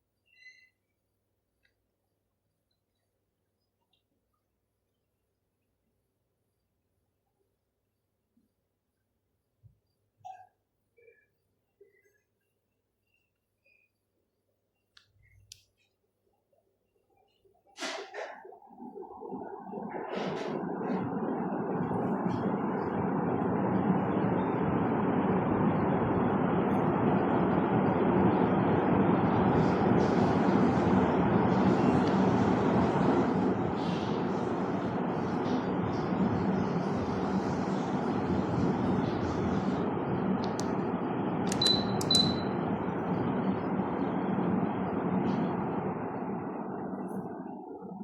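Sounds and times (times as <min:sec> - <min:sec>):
ceiling fan whooshing: 0:17.8 - 0:48.0
low motor hum: 0:18.3 - 0:48.0
short high beeps: 0:41.6 - 0:42.5.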